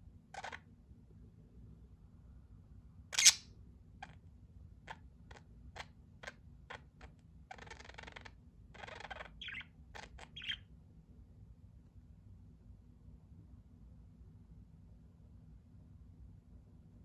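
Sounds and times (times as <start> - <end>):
budgerigar scratchy chattering: 0.4 - 0.6, 3.2 - 3.4, 7.5 - 10.6
budgerigar chirps and clicks: 3.2 - 3.4, 4.9 - 10.6.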